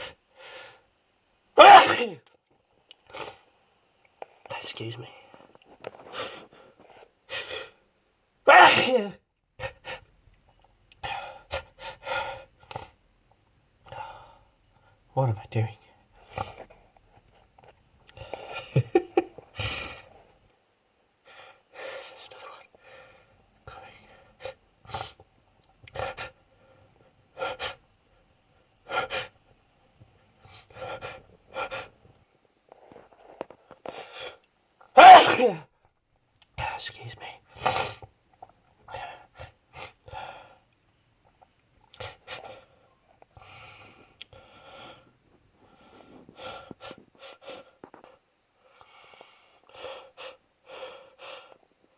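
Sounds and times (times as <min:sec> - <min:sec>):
person sneezing: 0:01.6 - 0:02.3, 0:08.5 - 0:09.2, 0:35.0 - 0:35.7.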